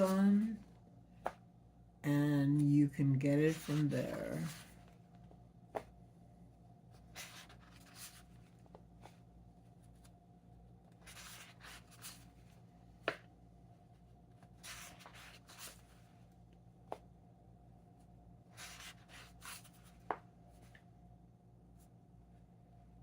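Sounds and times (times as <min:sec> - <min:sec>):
faint steady hum: 0:00.0 - 0:23.0
book pages turning: 0:03.5 - 0:05.0, 0:07.0 - 0:09.2, 0:10.9 - 0:13.2, 0:14.4 - 0:16.1, 0:18.6 - 0:20.8.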